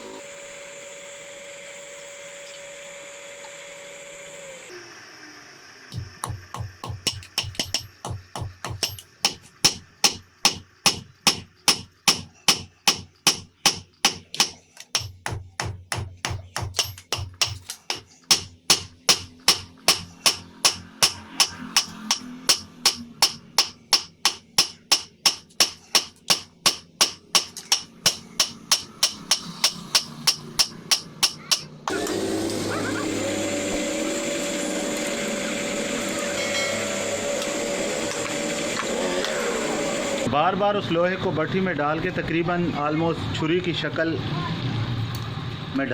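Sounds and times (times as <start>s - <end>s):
hammer striking iron on anvil: 5.9s - 31.8s
motor whirring: 31.8s - 40.3s.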